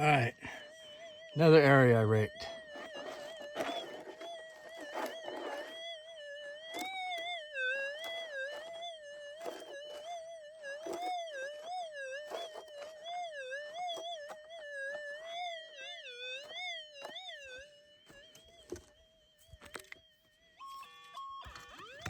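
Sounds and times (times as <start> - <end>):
metal detector wavering tone: 0.0 - 22.0
scrapes and knocks: 2.6 - 5.8.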